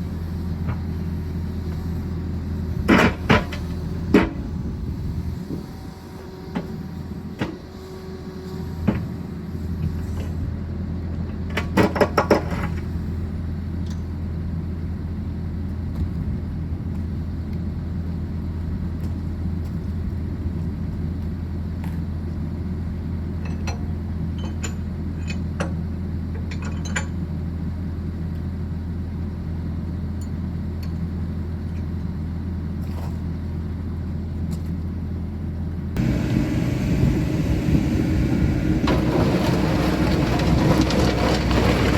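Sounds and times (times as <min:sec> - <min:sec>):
rattle of metal clanks: 0:26.4 - 0:27.2, 0:38.8 - 0:41.9
excavator diesel engine running: 0:33.6 - 0:41.9.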